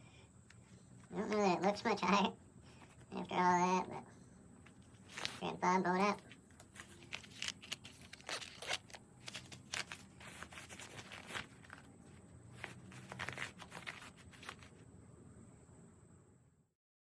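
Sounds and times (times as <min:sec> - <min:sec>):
pouch and clothing rustling: 0:04.7 - 0:05.5, 0:06.2 - 0:14.8.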